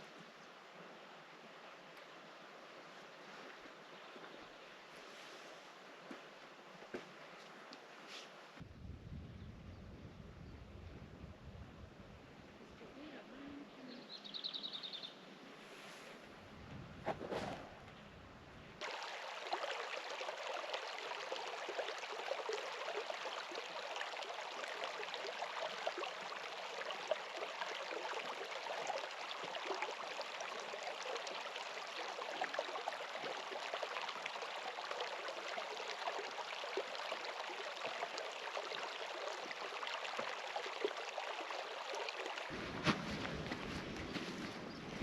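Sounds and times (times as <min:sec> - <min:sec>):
flowing water: 0:18.8 - 0:45.0.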